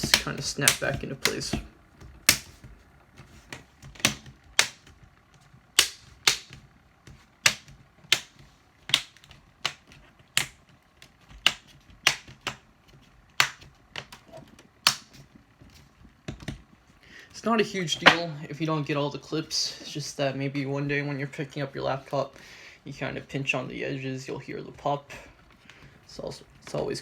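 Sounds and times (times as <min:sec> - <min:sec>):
plastic clips snapping into place: 0:00.0 - 0:02.7, 0:03.5 - 0:05.0, 0:05.8 - 0:06.7, 0:07.4 - 0:12.6, 0:13.4 - 0:15.2.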